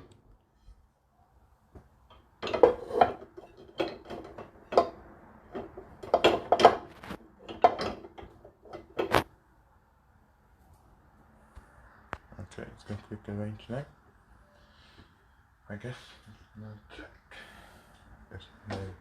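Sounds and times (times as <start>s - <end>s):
dishes and cutlery clattering: 2.4s - 9.1s.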